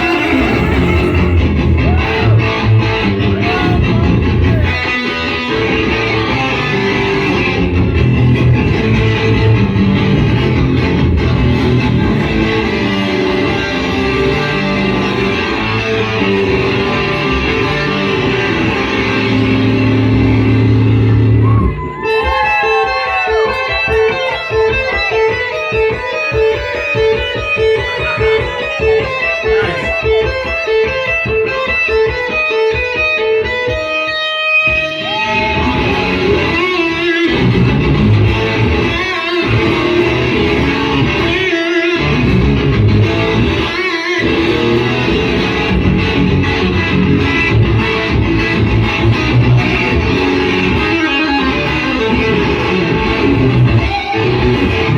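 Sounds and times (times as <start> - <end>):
pulsing bass line: 0.0 - 4.8
electric guitar playing: 0.0 - 54.9.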